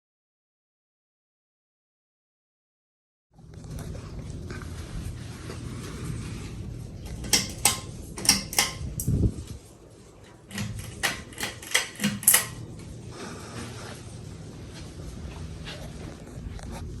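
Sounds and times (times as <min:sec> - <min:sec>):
sharp mechanical clicks and knocks: 0:07.2 - 0:09.2, 0:10.5 - 0:12.7.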